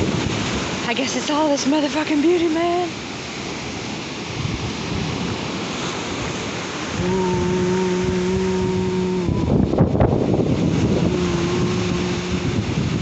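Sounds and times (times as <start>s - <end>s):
wind buffeting microphone: 0.0s - 1.0s, 1.6s - 13.0s
waves washing on shore: 0.0s - 13.0s
steady low tone: 7.0s - 13.0s.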